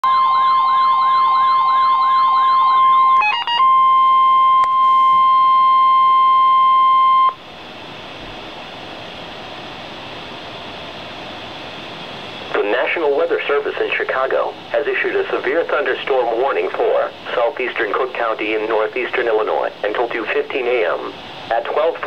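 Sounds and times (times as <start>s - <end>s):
short beeps: 0.0s - 7.4s
steady warning alarm tone: 0.0s - 7.4s
warbling siren: 0.0s - 7.4s
radio static hiss: 12.5s - 22.0s.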